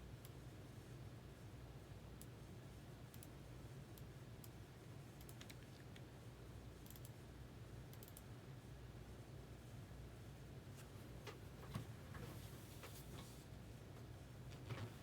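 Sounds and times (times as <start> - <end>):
faint irregular clicks: 3.1 - 3.4, 5.2 - 6.1, 6.8 - 7.2, 7.9 - 8.3.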